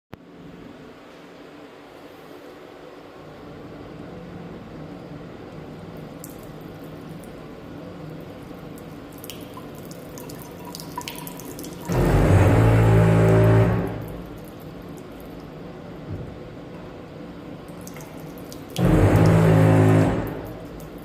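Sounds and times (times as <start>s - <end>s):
faint steady hum: 0.1s - 21.0s
water running from tap: 8.6s - 15.5s, 17.7s - 21.0s
loud buzzing drone: 11.9s - 14.4s, 18.8s - 20.7s.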